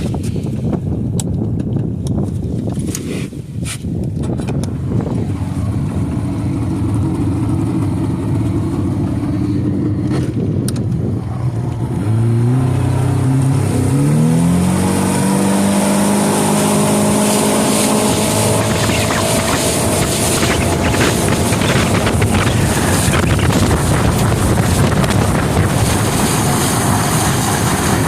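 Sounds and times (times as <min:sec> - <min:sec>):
outboard motor running: 0:04.5 - 0:28.0.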